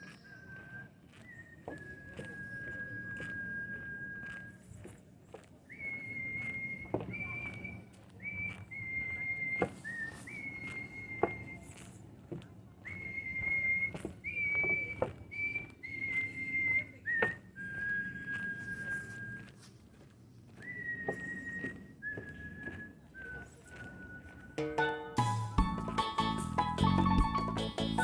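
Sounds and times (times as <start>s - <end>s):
whistled notes: 0.0s - 4.8s, 5.7s - 11.8s, 12.8s - 19.6s, 20.6s - 28.0s.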